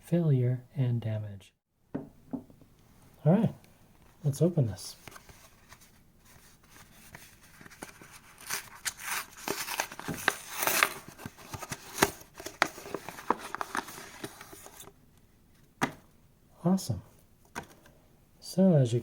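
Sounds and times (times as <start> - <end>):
packaging rustling and crinkling: 5.0 - 14.9.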